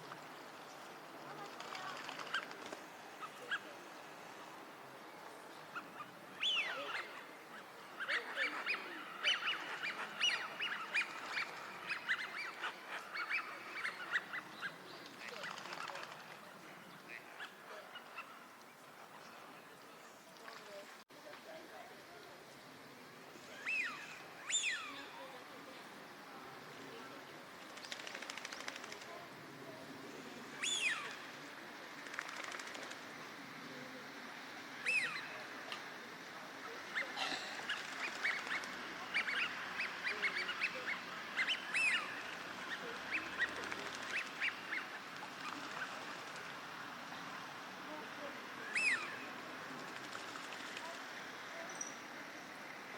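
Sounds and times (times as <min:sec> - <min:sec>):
ducks whistling calls: 0:07.9 - 0:14.8, 0:36.9 - 0:46.0, 0:48.7 - 0:49.3.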